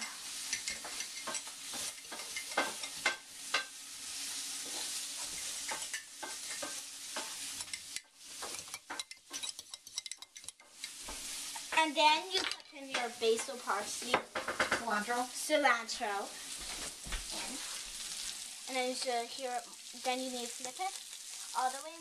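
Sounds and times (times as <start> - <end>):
onion sizzling in oil: 0.0 - 22.0.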